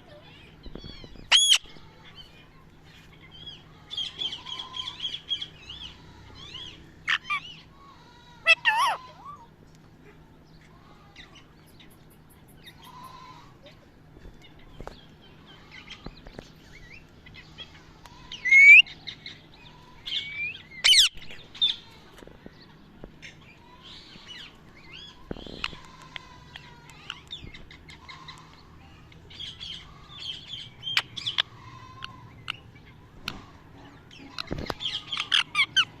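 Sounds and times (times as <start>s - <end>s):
faint low hum: 0.0s - 36.0s
parrot chirping and squawking: 0.8s - 1.8s, 3.5s - 9.5s, 17.4s - 22.0s, 29.3s - 36.0s.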